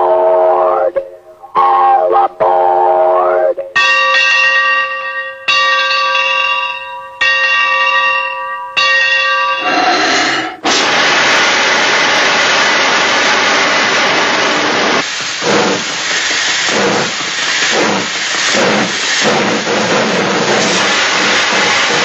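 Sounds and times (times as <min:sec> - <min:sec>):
bell ringing: 0:03.8 - 0:09.8
loud steady hiss: 0:09.8 - 0:22.0.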